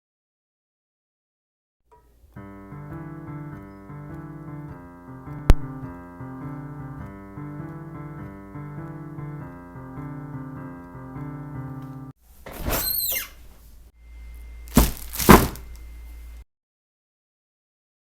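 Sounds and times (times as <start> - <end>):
piano music: 2.1 - 12.2
sharp click: 5.3 - 6.0.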